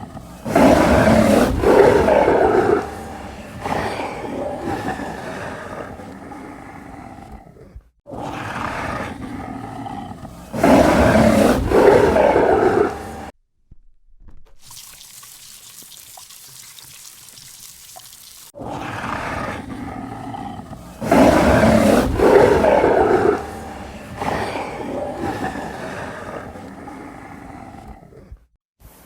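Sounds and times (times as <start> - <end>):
large animal roaring: 0.0 - 13.3, 18.6 - 28.4.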